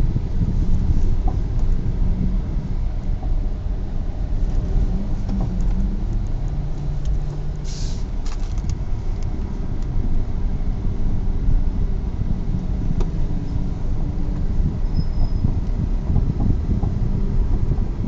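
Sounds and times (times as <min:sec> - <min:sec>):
car engine rumbling: 0:00.0 - 0:18.0
brief hiss: 0:07.6 - 0:08.1.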